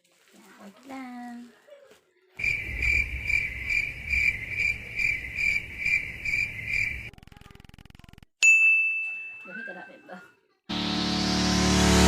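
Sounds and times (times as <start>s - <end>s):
crickets chirping: 2.4s - 7.1s.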